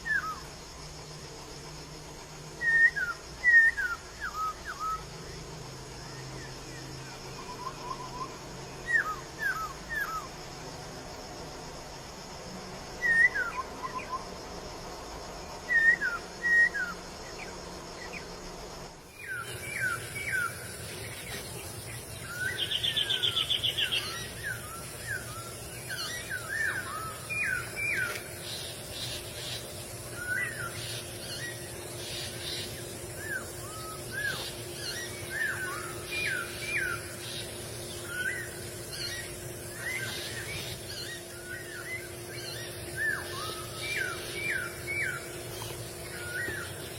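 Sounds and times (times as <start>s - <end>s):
birds whistling calls: 0.0s - 0.8s, 2.5s - 5.4s, 6.0s - 10.4s, 13.0s - 14.4s, 15.6s - 18.3s, 19.1s - 46.9s
dense bird chatter: 19.1s - 46.9s.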